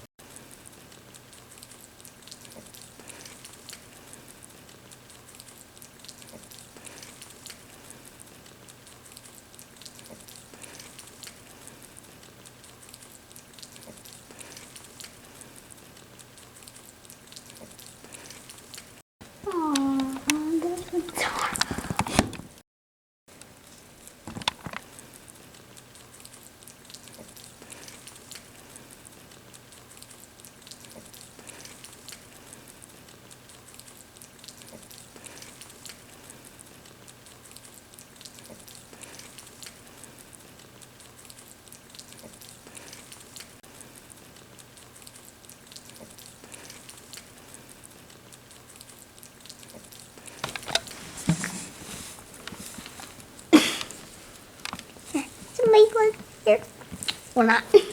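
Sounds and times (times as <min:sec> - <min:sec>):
rabbits chewing greens: 0:00.2 - 0:22.4, 0:23.4 - 0:57.9
leaves rustling: 0:50.2 - 0:57.9.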